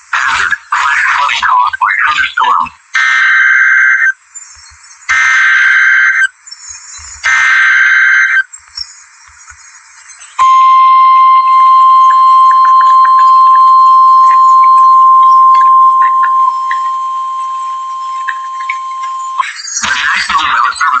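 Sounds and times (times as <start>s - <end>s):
radio hiss: 0.0s - 3.0s, 15.4s - 21.0s
static crackles: 0.0s - 10.4s, 12.0s - 21.0s
steady high alarm tone: 3.0s - 4.1s, 5.1s - 6.3s, 7.2s - 8.4s, 10.4s - 19.4s
harsh digital warble: 11.9s - 21.0s.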